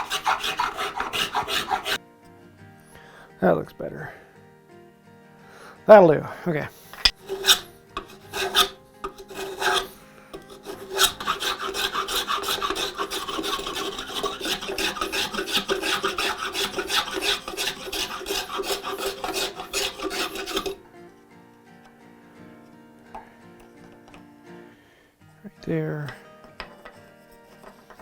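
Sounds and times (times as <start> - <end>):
hand tool sawing wood: 0.0 - 2.0, 7.0 - 20.8, 26.6 - 28.0.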